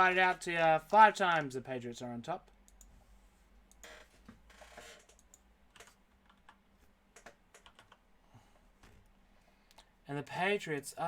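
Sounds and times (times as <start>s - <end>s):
faint computer keyboard typing: 2.7s - 2.9s, 5.0s - 8.0s.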